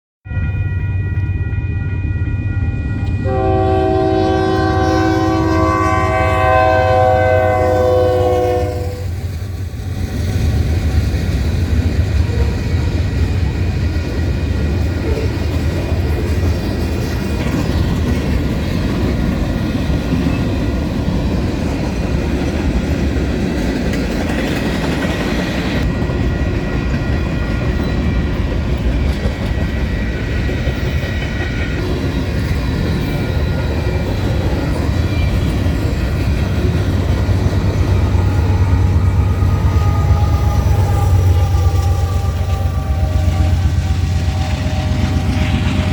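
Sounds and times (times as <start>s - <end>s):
train wheels on rails: 2.3s - 45.9s
locomotive air horn: 3.2s - 9.2s, 38.3s - 45.9s
locomotive engine: 26.9s - 45.9s.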